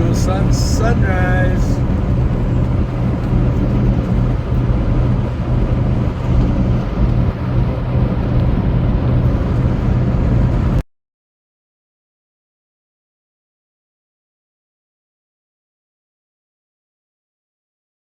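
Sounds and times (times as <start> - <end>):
road noise: 0.0 - 10.8
truck diesel engine drone: 0.0 - 10.8.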